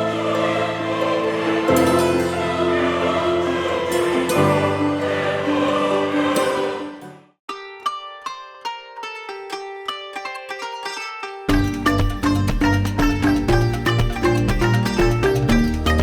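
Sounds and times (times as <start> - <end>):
sustained music chords: 0.0 - 7.2, 11.5 - 16.0
plucked string notes: 0.0 - 16.0.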